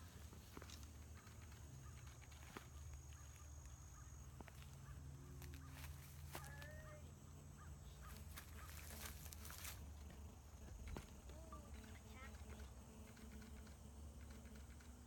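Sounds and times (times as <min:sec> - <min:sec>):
steady low hum: 0:00.0 - 0:15.0
faint short bird calls: 0:01.2 - 0:09.8.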